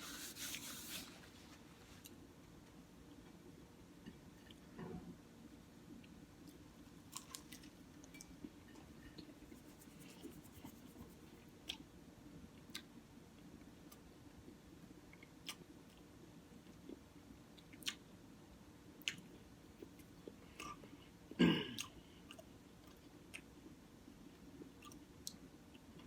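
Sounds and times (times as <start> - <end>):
chewing sandwich: 6.0 - 7.8, 15.2 - 18.1.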